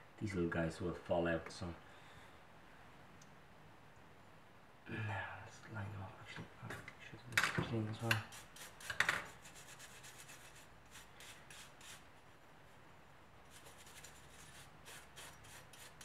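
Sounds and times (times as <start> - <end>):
rubbing and scratching metal part: 13.5 - 16.0.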